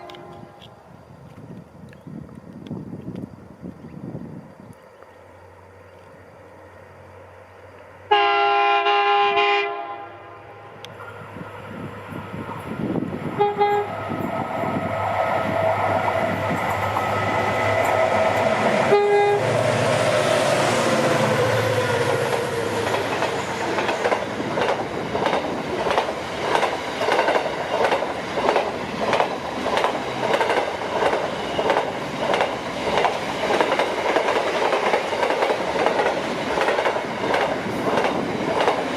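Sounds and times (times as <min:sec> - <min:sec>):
locomotive horn blasts: 0:00.0 - 0:00.5, 0:08.1 - 0:10.8, 0:13.4 - 0:13.9, 0:17.7 - 0:19.6
diesel locomotive engine: 0:00.0 - 0:38.9
train wheels clickety-clack: 0:15.9 - 0:18.8, 0:20.5 - 0:38.9.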